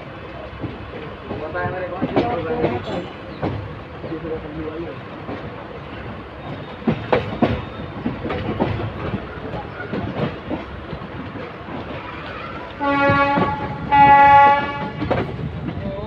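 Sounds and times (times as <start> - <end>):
train wheels clattering: 0.2 - 16.0
locomotive horn blasts: 12.8 - 15.1.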